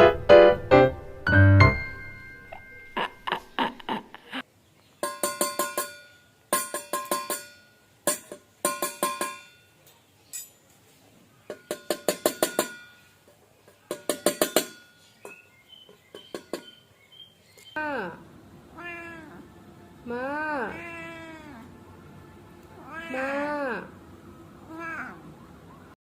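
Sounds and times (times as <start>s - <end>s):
rapid ringing strikes: 5.0s - 9.6s.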